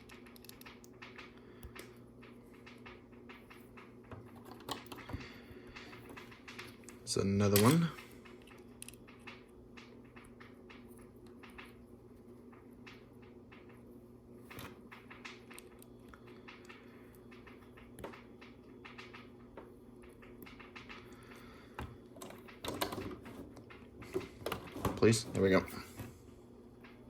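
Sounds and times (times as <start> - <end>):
plastic bricks clicking: 0.0 - 2.0
low steady hum: 0.0 - 27.0.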